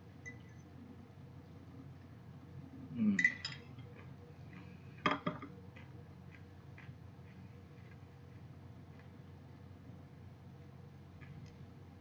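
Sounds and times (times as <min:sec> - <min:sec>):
low room hum: 0:00.0 - 0:12.0
faint eating clicks: 0:05.7 - 0:09.3, 0:11.1 - 0:11.6.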